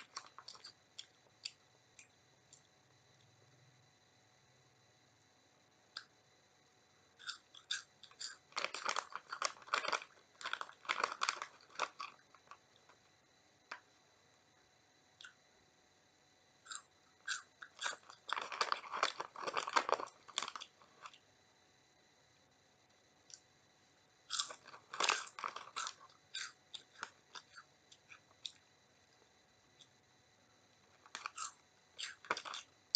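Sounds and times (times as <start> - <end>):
crunching and chewing snacks: 0.0 - 3.4, 7.2 - 13.1, 16.6 - 21.3, 24.2 - 30.0, 30.7 - 32.9.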